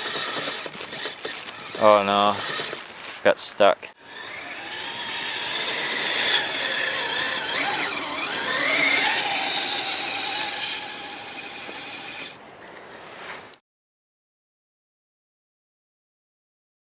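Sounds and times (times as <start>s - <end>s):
electric motor whining: 0.0s - 2.9s, 4.0s - 12.4s.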